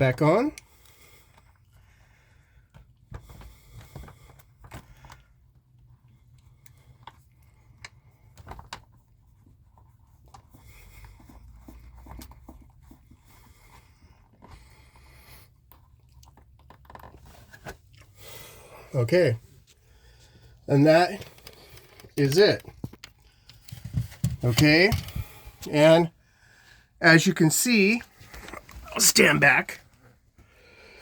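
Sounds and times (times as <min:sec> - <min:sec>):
faint clicks and scrapes: 0:00.6 - 0:18.2, 0:19.4 - 0:25.7.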